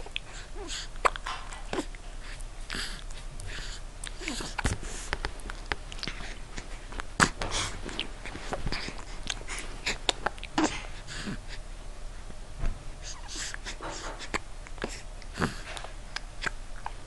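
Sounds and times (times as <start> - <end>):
breathing: 0.2 - 0.9, 2.2 - 5.2, 7.4 - 10.0, 10.7 - 11.6, 13.0 - 16.0.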